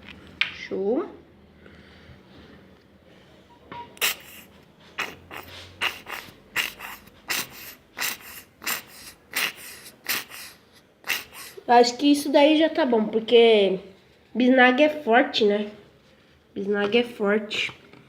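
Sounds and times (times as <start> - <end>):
paint tube squirting air: 4.0 - 11.6.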